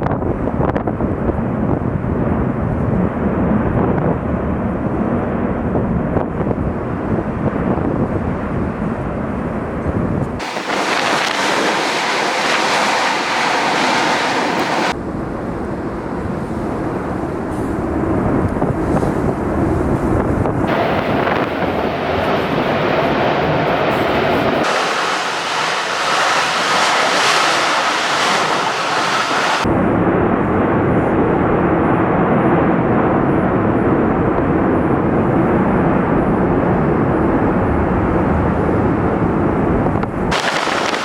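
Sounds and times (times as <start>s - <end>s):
deep roar of volcano vents: 10.4s - 15.0s, 20.5s - 29.7s, 40.1s - 41.0s.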